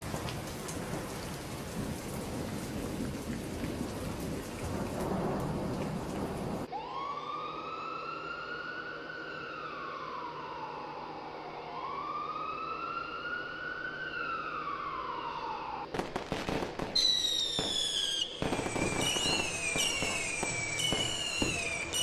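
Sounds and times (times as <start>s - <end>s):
heavy rain: 0.0s - 6.7s
thunder rumbling: 0.0s - 6.7s, 15.9s - 22.0s
siren wailing: 6.7s - 15.9s, 17.1s - 22.0s.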